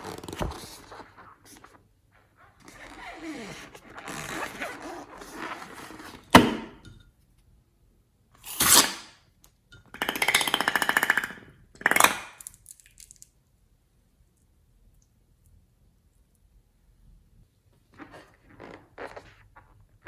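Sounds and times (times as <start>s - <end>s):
rubbing and crinkling handling noise: 0.0s - 6.3s.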